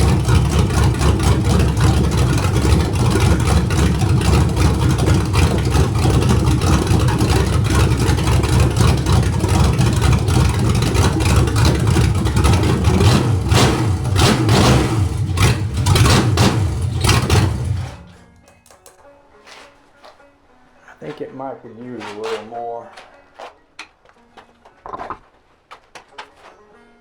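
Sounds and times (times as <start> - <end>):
car engine idling: 0.0 - 18.3.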